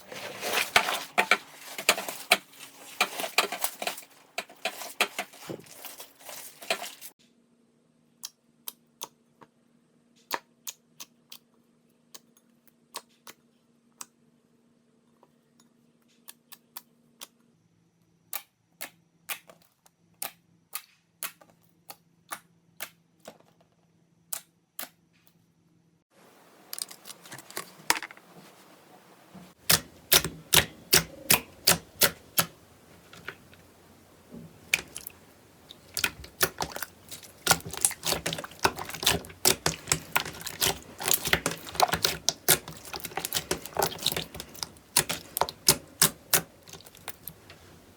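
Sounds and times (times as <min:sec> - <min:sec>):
slime clicking and popping: 0:29.7 - 0:32.6, 0:34.6 - 0:47.5.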